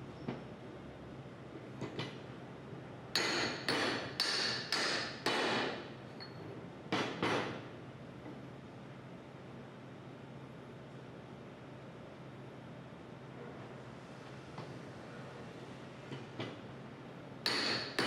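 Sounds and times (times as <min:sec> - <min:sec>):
hammer striking metal: 0:03.2 - 0:05.8, 0:17.5 - 0:18.0.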